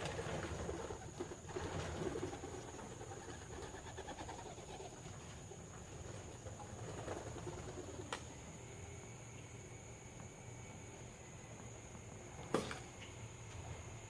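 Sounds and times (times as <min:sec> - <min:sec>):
pigeons cooing faintly: 0:00.0 - 0:09.8.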